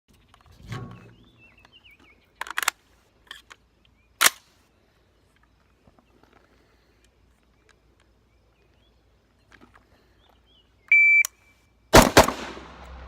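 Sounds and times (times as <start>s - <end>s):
bird chirping: 0.1s - 11.9s
rifle shots: 11.9s - 13.0s.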